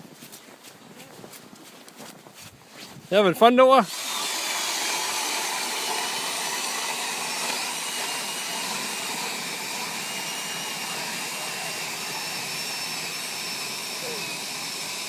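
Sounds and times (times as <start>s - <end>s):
ice auger rushing noise: 3.1s - 15.0s
cordless drill motor whine: 3.8s - 15.0s.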